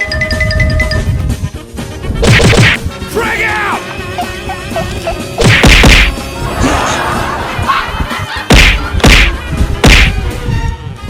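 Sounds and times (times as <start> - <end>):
background music: 0.0 - 11.0
heavy thudding hits: 5.4 - 6.2, 8.5 - 10.3.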